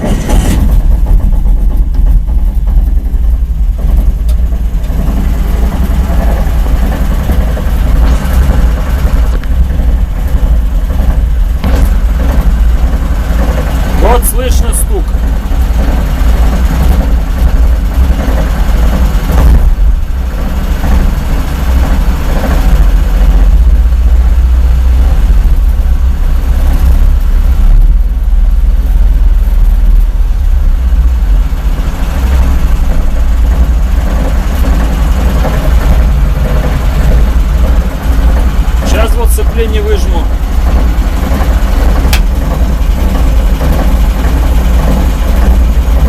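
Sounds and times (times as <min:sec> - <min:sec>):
engine idling: 0:00.0 - 0:46.0
gearbox whirring: 0:00.0 - 0:46.0
repeating driveshaft knock: 0:32.0 - 0:46.0.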